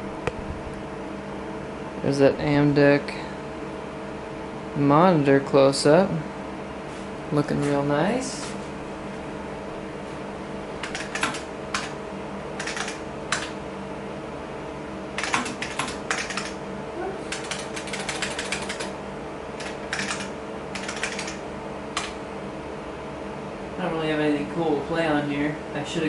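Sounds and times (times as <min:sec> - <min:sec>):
steady hum: 0:00.0 - 0:26.0
keyboard key clicks: 0:10.8 - 0:11.9.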